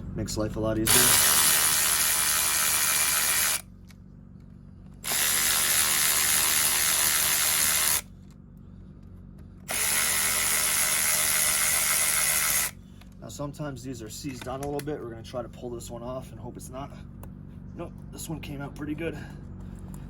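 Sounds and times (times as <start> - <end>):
electric ratchet spinning bolts: 0.8 - 3.7, 5.0 - 8.1, 9.7 - 12.8.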